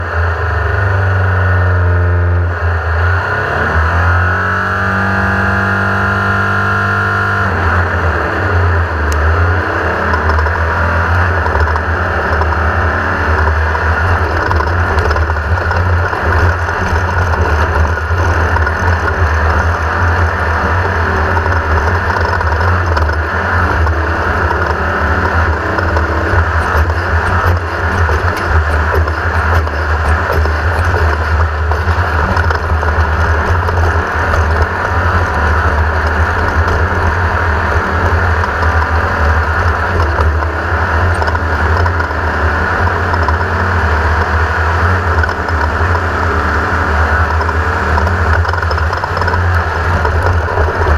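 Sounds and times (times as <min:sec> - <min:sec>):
buggy engine running hard: 0:00.0 - 0:50.9.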